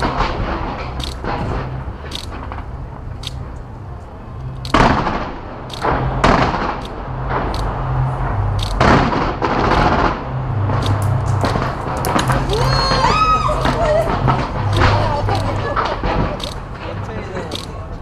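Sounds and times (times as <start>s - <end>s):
fireworks booms: 4.7s - 7.5s
fireworks cracking: 4.7s - 7.8s, 8.6s - 18.0s.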